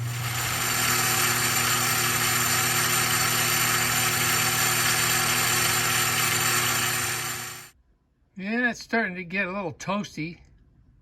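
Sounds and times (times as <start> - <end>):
machine motor humming and hissing: 0.0 - 7.7.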